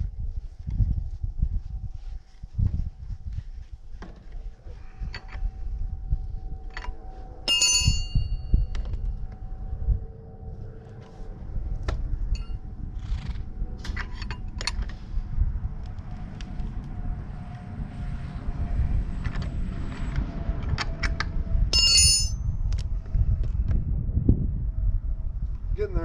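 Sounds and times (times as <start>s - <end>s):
wind on microphone: 0.0s - 26.0s
ringing metal strike: 6.4s - 9.3s, 12.3s - 12.7s, 21.7s - 22.6s
metal clicks and clinks: 21.8s - 22.4s.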